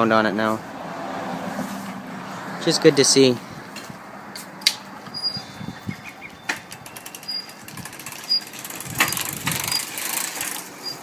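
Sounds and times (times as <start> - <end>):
short high squeak: 5.1 - 7.6
bicycle freewheel clicking: 6.7 - 11.0.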